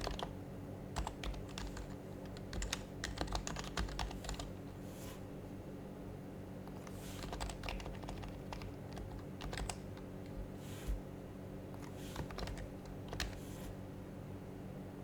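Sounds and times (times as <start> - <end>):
soft keyboard keystrokes: 0.0 - 0.3, 1.0 - 4.8, 6.7 - 11.0, 11.7 - 13.7.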